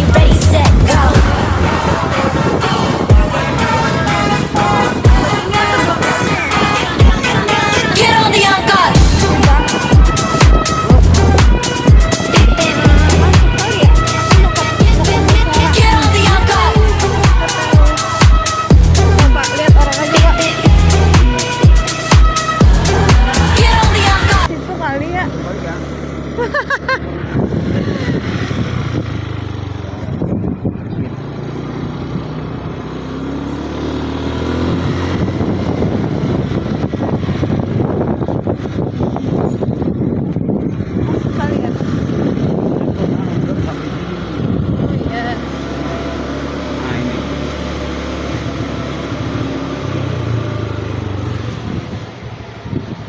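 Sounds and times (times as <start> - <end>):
vehicle engines running: 0.0 - 53.0
engine revving up: 7.6 - 30.4, 31.1 - 39.6, 41.2 - 52.2.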